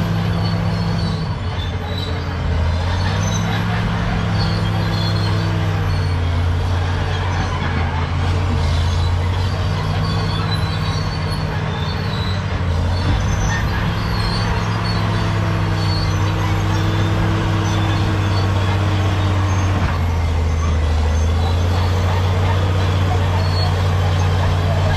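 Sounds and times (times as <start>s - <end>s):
bulldozer diesel engine running: 0.0s - 24.9s
short high squeaks: 0.1s - 24.9s.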